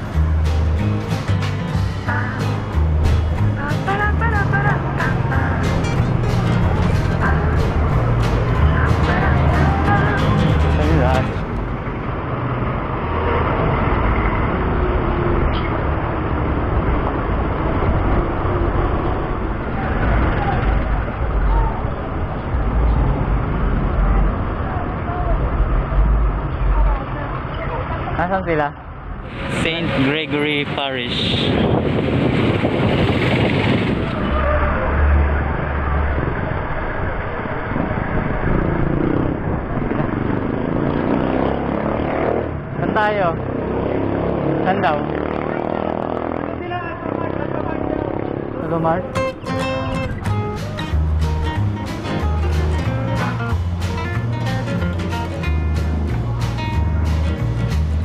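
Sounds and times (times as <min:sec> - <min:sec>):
deep rumble: 0:00.0 - 0:41.6
road and traffic noise: 0:00.0 - 0:58.0
wind noise on microphone: 0:29.2 - 0:41.8.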